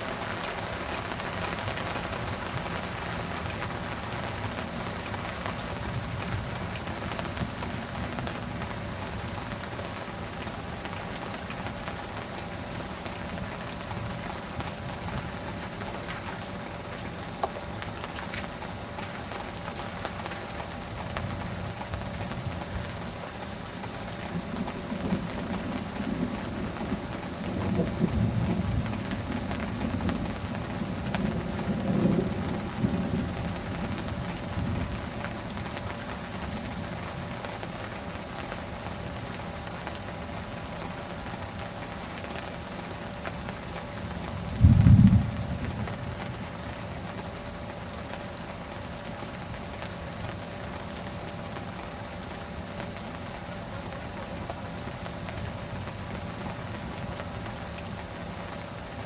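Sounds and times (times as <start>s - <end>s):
heavy rain: 0.0s - 59.0s
low rolling thunder: 24.2s - 35.3s, 44.3s - 47.2s.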